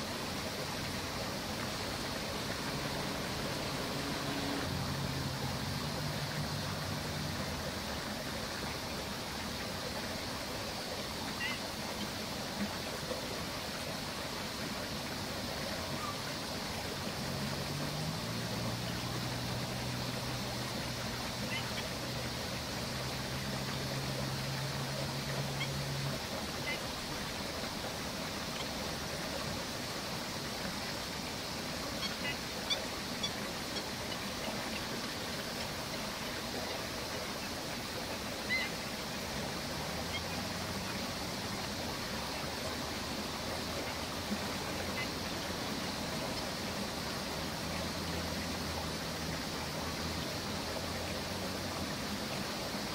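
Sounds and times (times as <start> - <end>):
steady rushing noise: 0.0 - 10.4
low steady engine hum: 0.0 - 52.9
outdoor background hiss: 0.0 - 52.9.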